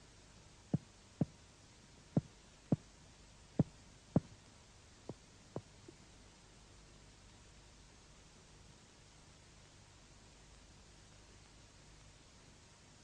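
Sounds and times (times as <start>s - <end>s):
finger tapping on chest: 3.6s - 4.3s.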